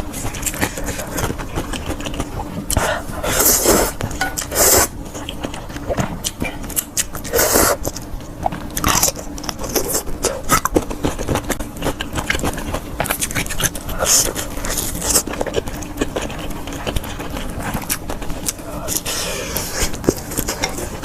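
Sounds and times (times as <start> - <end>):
chewing crunchy food: 0.0 - 21.0.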